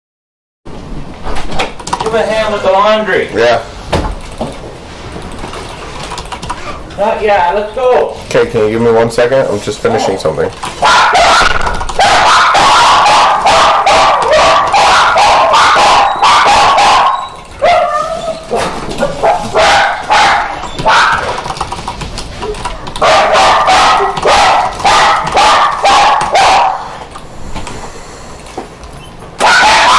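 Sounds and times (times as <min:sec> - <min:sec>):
dog whining: 0:09.8 - 0:21.5, 0:22.4 - 0:27.0
dog barking and yipping: 0:09.9 - 0:21.6, 0:22.5 - 0:27.0, 0:29.4 - 0:29.9.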